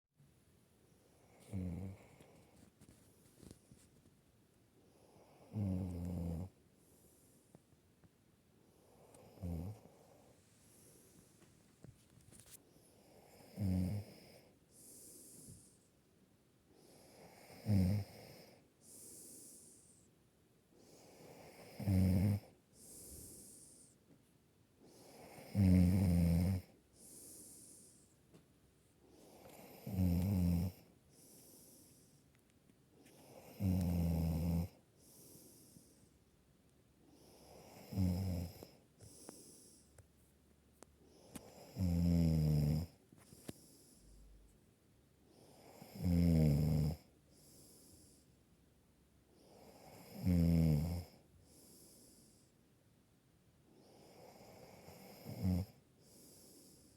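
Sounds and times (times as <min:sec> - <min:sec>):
person snoring: 0:13.3 - 0:15.3, 0:16.9 - 0:19.7, 0:21.1 - 0:23.8, 0:25.0 - 0:27.8, 0:29.3 - 0:30.8, 0:33.4 - 0:34.8, 0:37.2 - 0:39.8, 0:41.5 - 0:43.0, 0:45.6 - 0:47.1, 0:49.7 - 0:51.2
breathy hiss: 0:14.6 - 0:16.0, 0:18.5 - 0:20.1, 0:22.7 - 0:24.0, 0:26.9 - 0:28.2, 0:38.6 - 0:40.0.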